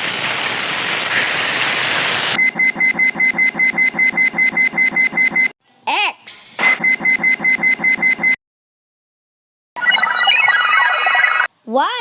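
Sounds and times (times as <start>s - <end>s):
electronic alarm beeping: 2.4s - 5.5s, 6.7s - 8.4s, 9.8s - 11.5s.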